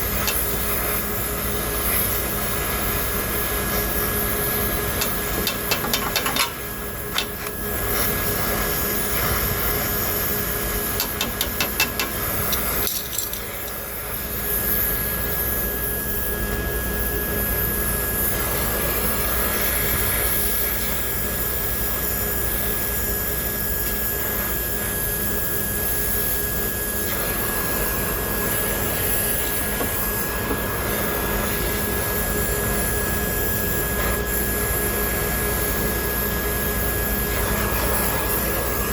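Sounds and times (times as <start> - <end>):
torch flame hissing: 0.0 - 38.9
metallic rattling and tapping: 5.0 - 7.6, 11.0 - 13.8.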